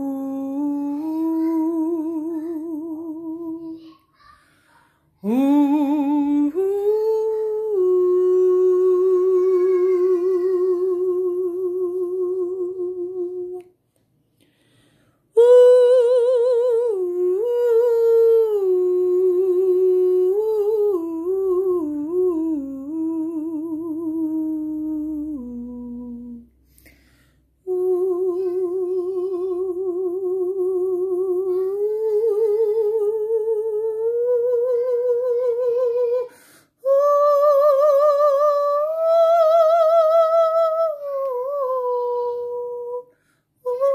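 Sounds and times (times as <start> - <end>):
person humming with vibrato: 0.0 - 4.0, 5.2 - 13.7, 15.4 - 26.5, 27.6 - 43.9.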